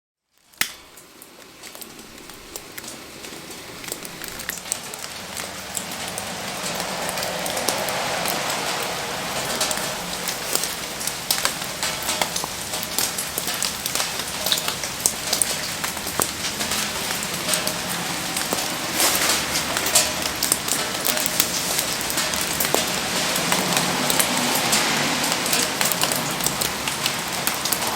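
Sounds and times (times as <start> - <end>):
campfire crackling: 0.2 - 27.9
rain falling: 0.3 - 27.9.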